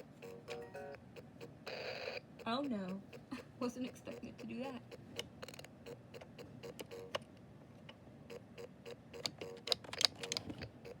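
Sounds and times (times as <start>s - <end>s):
toy ferris wheel clicking: 2.4s - 7.2s.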